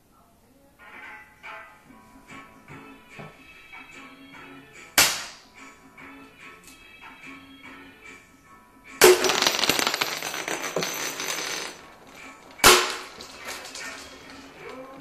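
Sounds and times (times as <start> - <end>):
air revolver shots: 5.0 - 5.5, 12.6 - 13.1.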